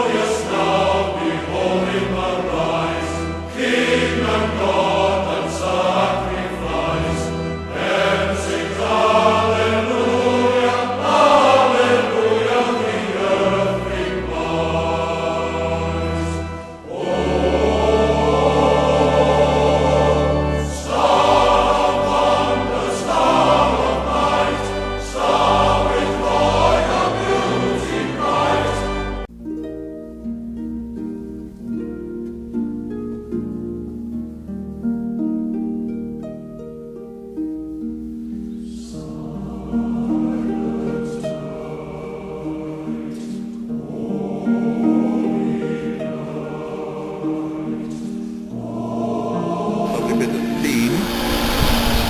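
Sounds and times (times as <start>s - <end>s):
choir singing sustained chords: 0.0s - 52.0s
harp plucked notes: 29.3s - 41.6s.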